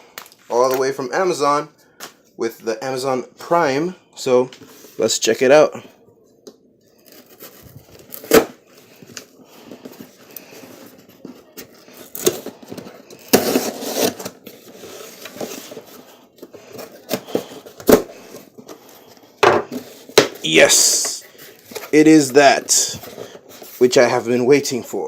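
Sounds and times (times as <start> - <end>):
package rustling and scraping: 6.8 - 24.8
package tearing: 7.0 - 8.6, 11.5 - 15.8.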